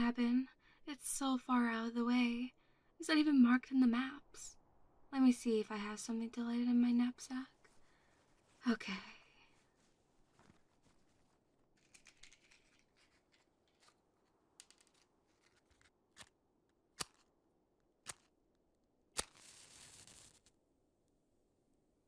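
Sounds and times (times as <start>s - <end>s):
rummaging through a bag: 9.5s - 16.0s
sharp match strikes: 17.0s - 17.3s, 18.0s - 18.3s, 19.1s - 20.6s
flame hissing: 19.2s - 20.5s.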